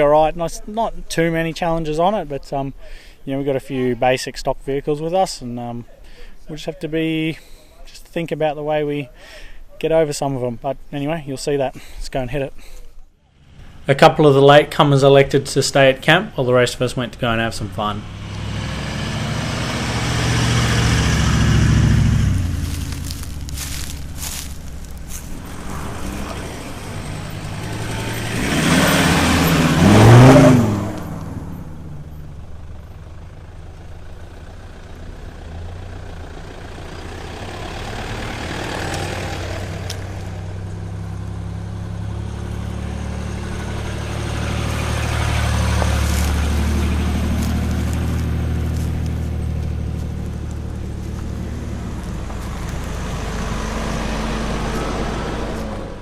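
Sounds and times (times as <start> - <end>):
vehicle accelerating past on gravel: 17.4 - 56.0.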